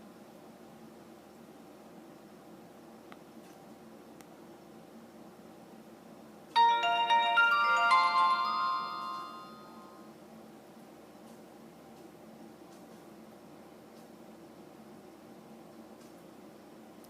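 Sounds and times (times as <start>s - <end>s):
phone power-on jingle: 6.6s - 10.0s.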